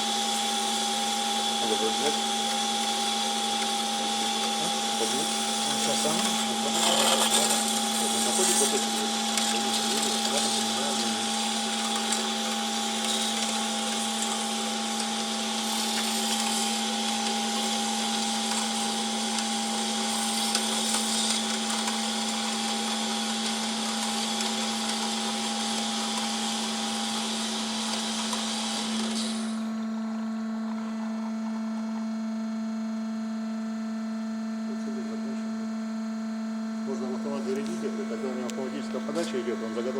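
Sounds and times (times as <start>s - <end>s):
band saw hum: 0.0s - 39.9s.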